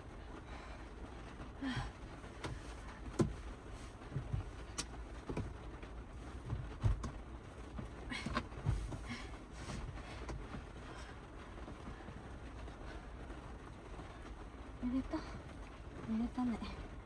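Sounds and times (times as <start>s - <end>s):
low steady rumble: 0.0s - 17.0s
rain tapping on van roof: 0.0s - 17.0s.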